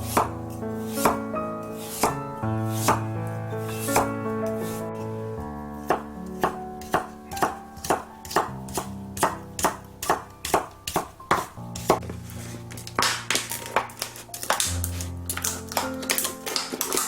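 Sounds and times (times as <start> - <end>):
background music: 0.0 - 17.0
knife chopping on cutting board: 5.9 - 12.0.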